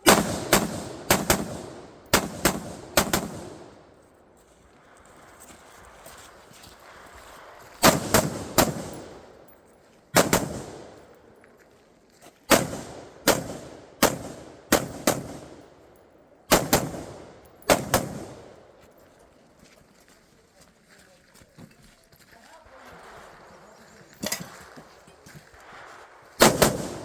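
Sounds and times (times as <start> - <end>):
rifle shots: 0.0 - 3.8, 7.8 - 9.4, 10.2 - 11.1, 12.5 - 15.8, 16.5 - 18.6, 26.4 - 27.0.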